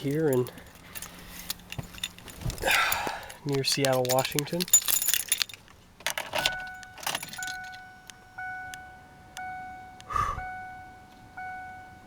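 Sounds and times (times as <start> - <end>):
car keys jangling: 0.0 - 9.5
car warning chime dinging: 3.0 - 12.0.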